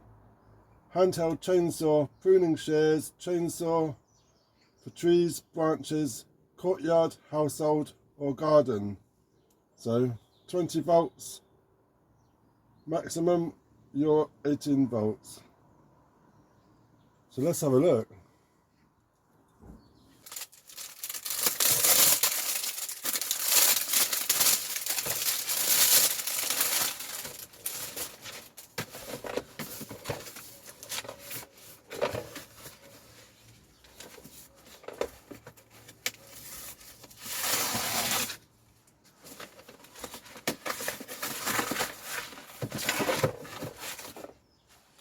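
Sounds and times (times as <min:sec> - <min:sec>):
packaging tearing and crinkling: 0:20.2 - 0:32.8, 0:36.0 - 0:38.4, 0:39.3 - 0:44.2.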